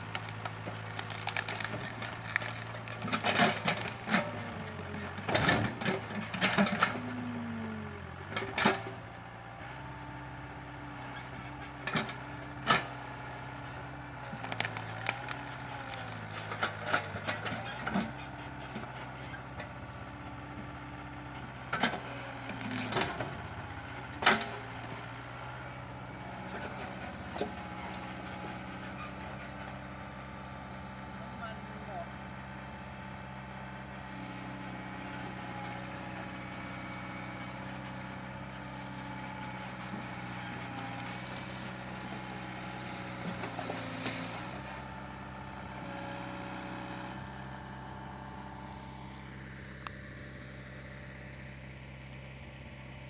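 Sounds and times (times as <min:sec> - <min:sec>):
wood and roots cracking: 0:00.0 - 0:04.9, 0:14.2 - 0:17.3
excavator diesel engine running: 0:00.0 - 0:53.0.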